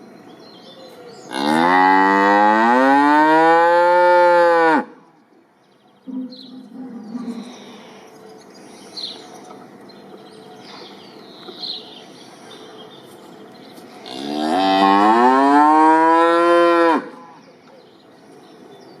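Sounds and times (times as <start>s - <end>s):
cow mooing: 1.3s - 4.9s, 14.1s - 17.2s.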